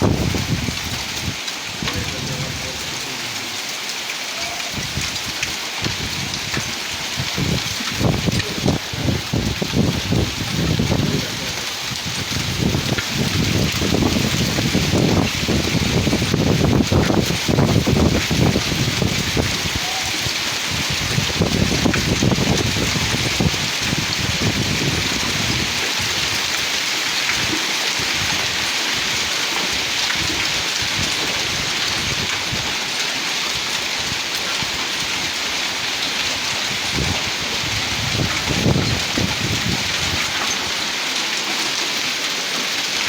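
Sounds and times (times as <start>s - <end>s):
wind buffeting microphone: 0.0s - 2.9s, 4.8s - 26.3s, 36.5s - 40.8s
heavy rain hiss: 0.0s - 43.0s.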